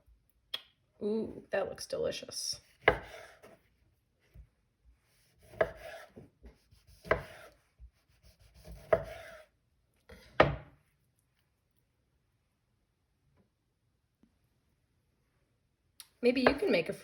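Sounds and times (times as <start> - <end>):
knife chopping on cutting board: 2.6 - 3.6, 5.2 - 9.5, 10.3 - 10.8, 16.4 - 16.7.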